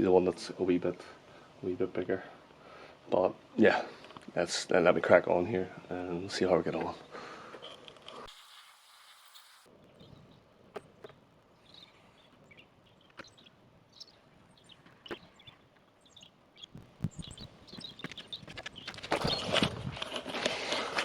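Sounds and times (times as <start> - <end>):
faint bird chirps: 9.3 - 19.6
rustling handling noise: 14.3 - 21.0.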